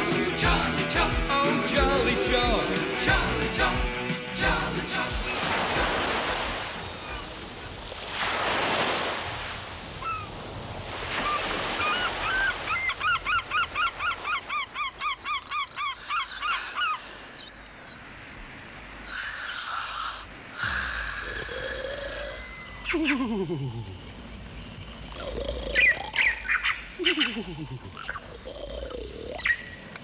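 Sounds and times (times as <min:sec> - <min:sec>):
hiss: 0:15.5 - 0:26.3.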